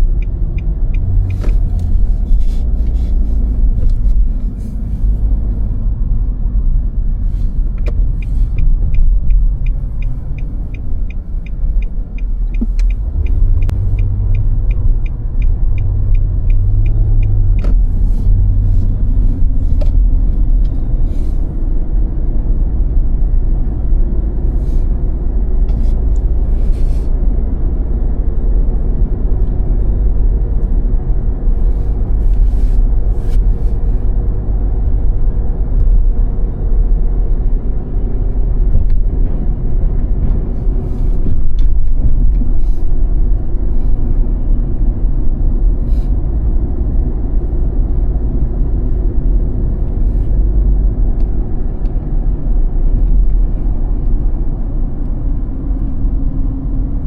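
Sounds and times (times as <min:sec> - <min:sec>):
regular ticking: 0:00.0 - 0:02.0, 0:07.7 - 0:17.9
car engine and tyres rumbling: 0:00.0 - 0:57.0.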